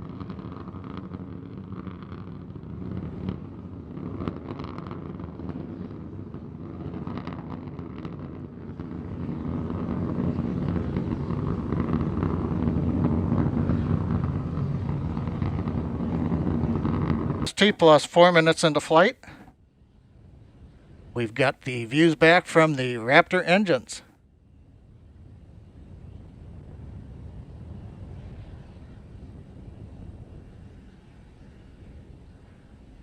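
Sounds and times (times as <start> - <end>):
rocket engines rumbling: 0.1 - 19.4, 21.2 - 24.0.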